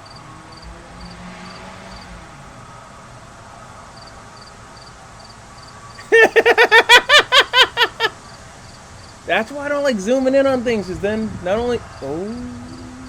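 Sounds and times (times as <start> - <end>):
insect chirping: 0.0 - 2.7, 3.9 - 10.0, 11.7 - 13.0
low hiss: 4.9 - 13.0
burst of laughter: 6.0 - 8.2.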